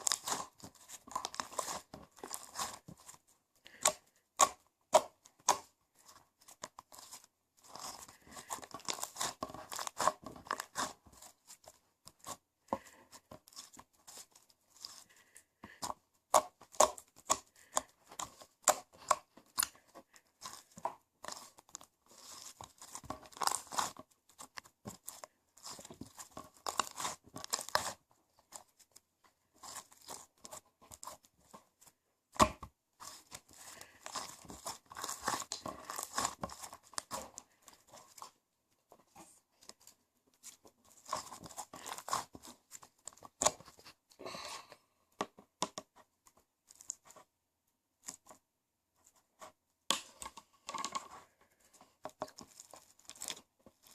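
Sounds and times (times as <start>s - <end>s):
slime crackling and tearing: 0.0s - 5.7s, 6.4s - 12.4s, 20.4s - 28.0s, 29.6s - 31.3s, 32.4s - 38.3s, 39.6s - 43.7s, 52.3s - 53.9s.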